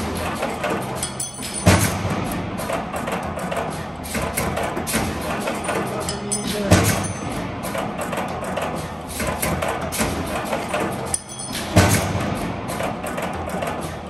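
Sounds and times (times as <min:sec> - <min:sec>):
music with percussive hits: 0:00.0 - 0:14.0.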